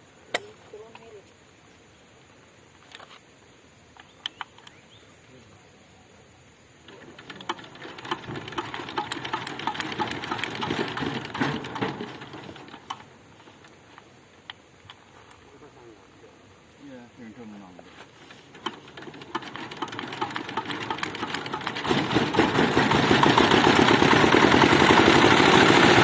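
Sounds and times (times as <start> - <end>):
diesel engine cranking clatter: 6.9 - 13.1, 18.5 - 26.0.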